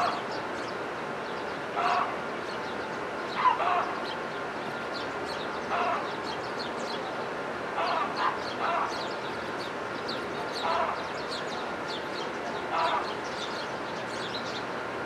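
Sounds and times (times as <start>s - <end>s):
small birds chirping: 7.8s - 14.8s.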